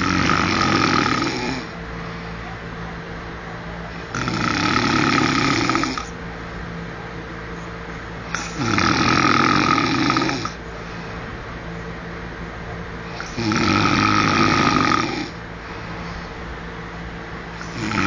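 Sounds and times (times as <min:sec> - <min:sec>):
man snoring: 0:00.0 - 0:01.8, 0:04.0 - 0:06.1, 0:08.3 - 0:10.6, 0:13.1 - 0:15.4, 0:17.6 - 0:18.0.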